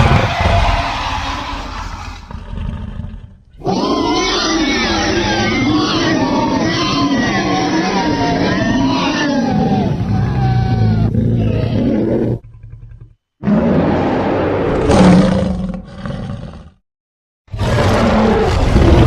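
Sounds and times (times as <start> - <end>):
monster growling roars: 0.0 - 12.4, 17.5 - 19.0.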